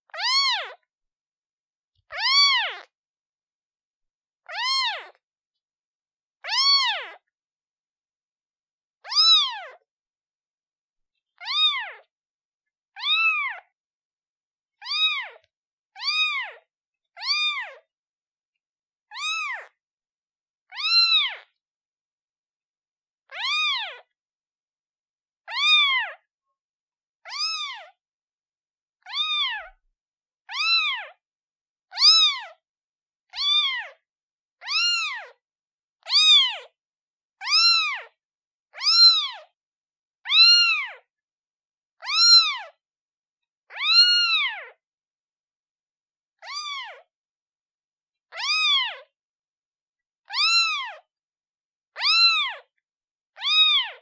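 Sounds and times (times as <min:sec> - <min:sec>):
kitten meowing: 0:00.1 - 0:00.8, 0:02.1 - 0:02.9, 0:04.4 - 0:05.2, 0:06.4 - 0:07.2, 0:09.0 - 0:09.8, 0:11.4 - 0:12.1, 0:13.0 - 0:13.7, 0:14.8 - 0:17.8, 0:19.1 - 0:19.8, 0:20.7 - 0:21.6, 0:23.3 - 0:24.1, 0:25.5 - 0:26.2, 0:27.3 - 0:28.0, 0:29.0 - 0:29.8, 0:30.5 - 0:31.2, 0:31.9 - 0:32.6, 0:33.3 - 0:34.0, 0:34.6 - 0:35.4, 0:36.0 - 0:36.7, 0:37.4 - 0:38.2, 0:38.8 - 0:39.5, 0:40.3 - 0:41.1, 0:42.0 - 0:42.8, 0:43.7 - 0:44.8, 0:46.4 - 0:47.1, 0:48.3 - 0:49.1, 0:50.2 - 0:51.1, 0:52.0 - 0:52.7, 0:53.3 - 0:54.0.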